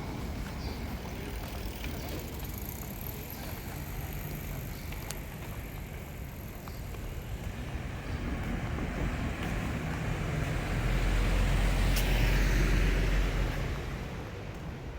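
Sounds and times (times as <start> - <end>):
road traffic rumble: 0.0 - 14.9.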